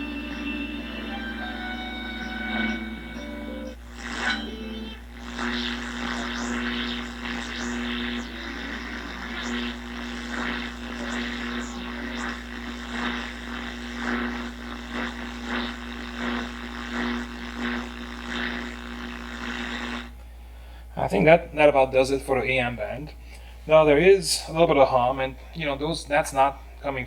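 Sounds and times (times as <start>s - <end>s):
low mains hum: 0.0s - 27.0s
radio broadcast through speaker: 3.8s - 20.1s.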